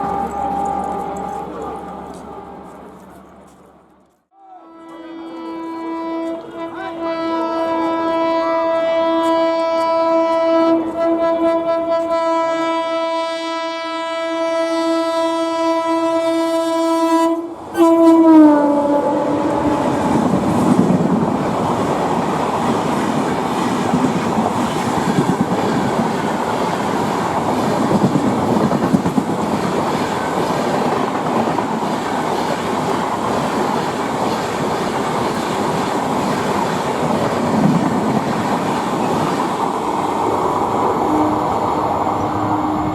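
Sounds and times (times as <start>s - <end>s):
train wheels rumbling on rails: 0.0s - 12.8s, 17.5s - 42.9s
locomotive air horn blast: 4.4s - 20.6s, 40.7s - 42.9s.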